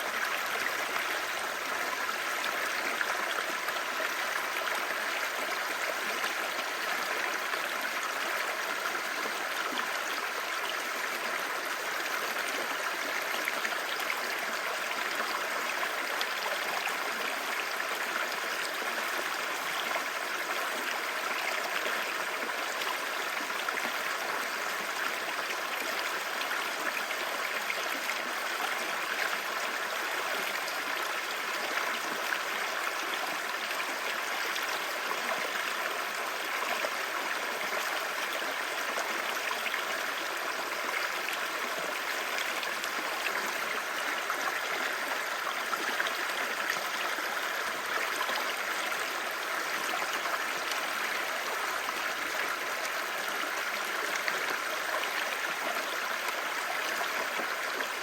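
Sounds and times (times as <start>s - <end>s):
river water babbling: 0.0s - 58.0s.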